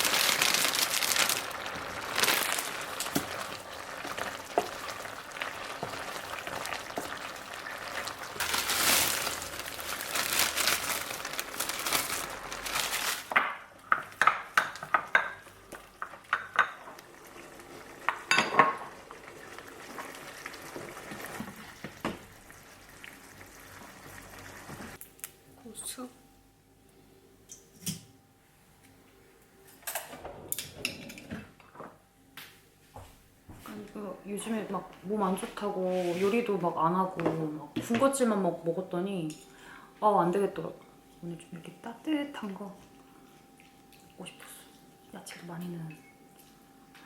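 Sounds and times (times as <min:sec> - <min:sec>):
curry simmering and sizzling: 0:00.0 - 0:25.0.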